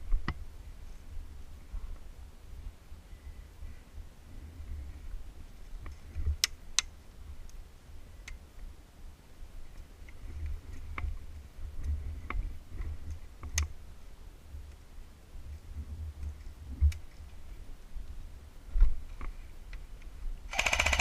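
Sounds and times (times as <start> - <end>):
constant low rumble: 0.0 - 20.6
sharp clicks: 20.5 - 21.0.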